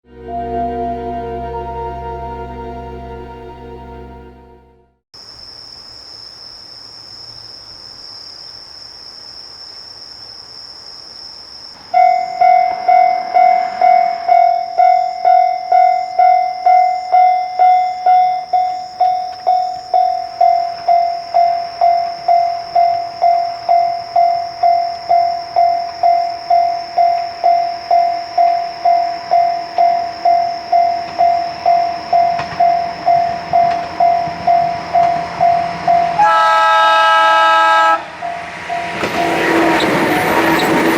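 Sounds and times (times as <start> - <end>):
steady high-pitched tone: 0.0 - 5.0, 11.9 - 36.4
level crossing bell ringing: 12.0 - 36.3.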